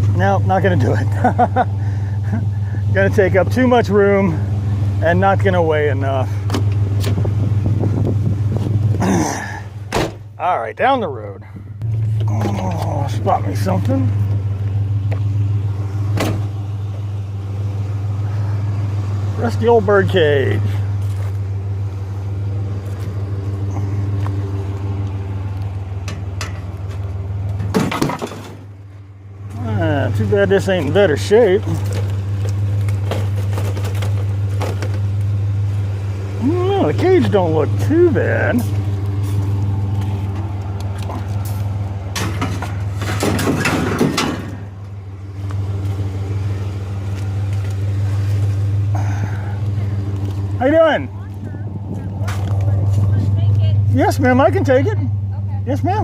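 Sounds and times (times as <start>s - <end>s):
vehicle engine running: 0.0s - 56.0s
clattering noise: 41.0s - 44.6s.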